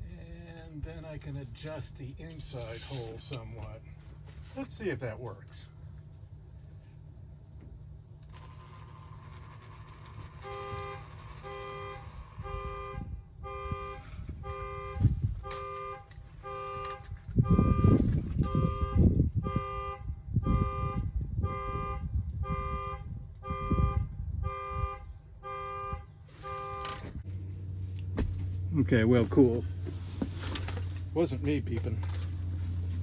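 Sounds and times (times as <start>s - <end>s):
vehicle horn honking: 9.2s - 27.1s
low rumbling thuds: 17.0s - 21.5s, 27.0s - 31.2s.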